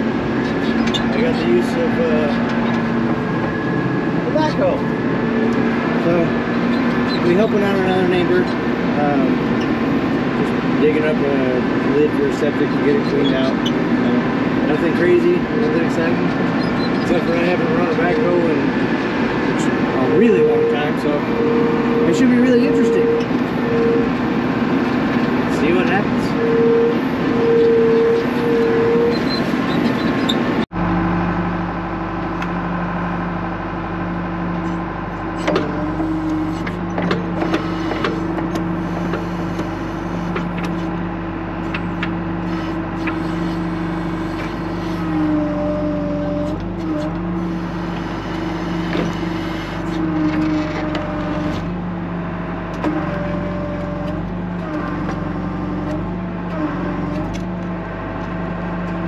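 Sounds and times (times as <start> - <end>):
backhoe diesel engine revving: 0.0 - 59.0
knocks and clanks: 35.4 - 40.9.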